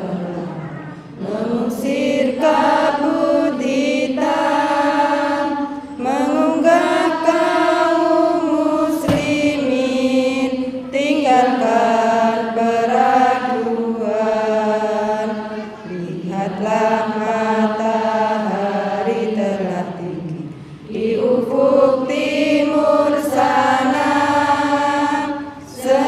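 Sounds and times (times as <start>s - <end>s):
voices chanting in unison: 0.0s - 26.0s.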